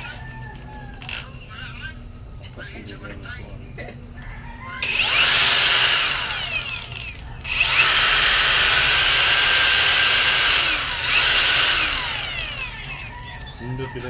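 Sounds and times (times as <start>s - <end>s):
angle grinder running: 4.8s - 13.2s.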